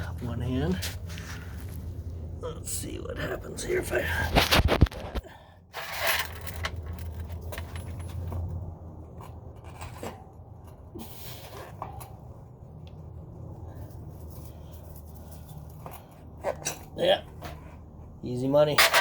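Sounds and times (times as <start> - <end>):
metal clinking and scraping: 5.7 - 12.4, 13.7 - 17.9, 18.7 - 19.0.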